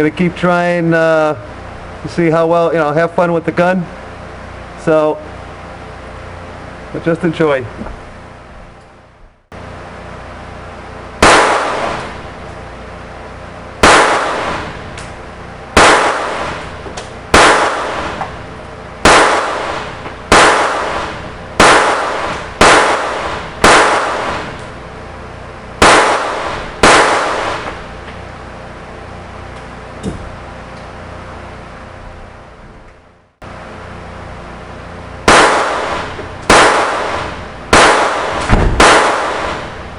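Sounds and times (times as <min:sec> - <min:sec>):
pistol shots echoing: 0:11.2 - 0:12.2, 0:13.8 - 0:14.9, 0:15.8 - 0:18.4, 0:19.0 - 0:24.7, 0:25.8 - 0:27.8, 0:35.3 - 0:39.8.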